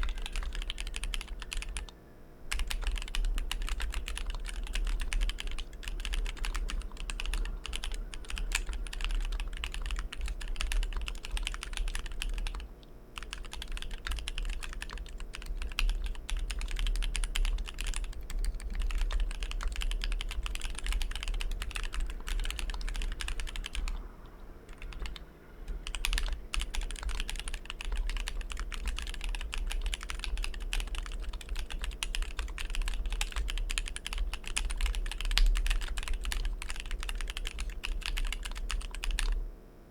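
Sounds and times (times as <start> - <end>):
mechanical keyboard typing: 0.0 - 1.9, 2.5 - 24.1, 24.7 - 39.4.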